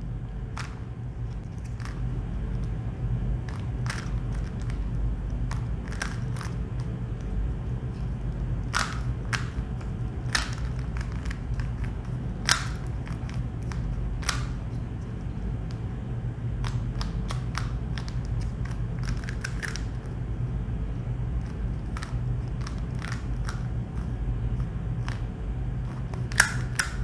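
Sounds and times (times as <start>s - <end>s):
steady low hum: 0.0s - 27.0s
plastic puzzle cube clicking: 3.5s - 6.9s, 8.6s - 14.6s, 16.6s - 20.1s, 21.8s - 24.1s, 25.9s - 27.0s.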